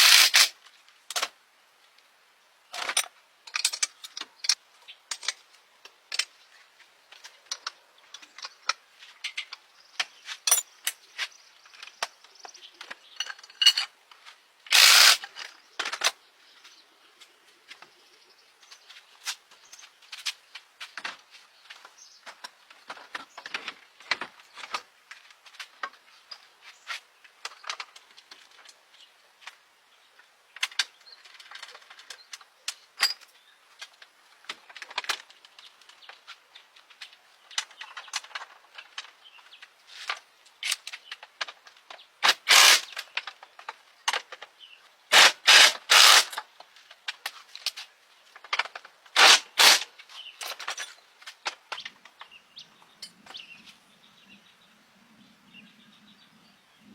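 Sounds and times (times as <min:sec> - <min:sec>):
tools clicking and knocking: 0:02.8 - 0:06.4, 0:07.5 - 0:11.0, 0:12.8 - 0:13.9, 0:14.7 - 0:16.2, 0:40.6 - 0:44.5, 0:45.1 - 0:47.7.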